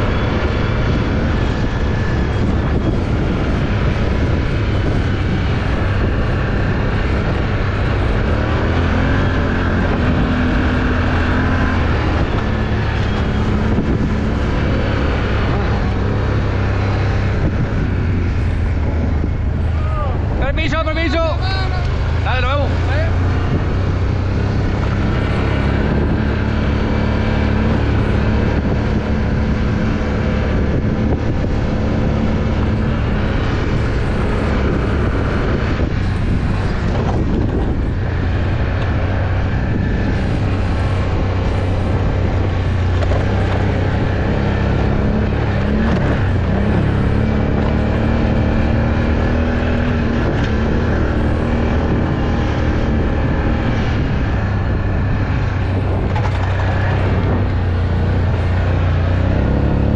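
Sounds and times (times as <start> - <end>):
off-road vehicle engine running: 0.0 - 59.9.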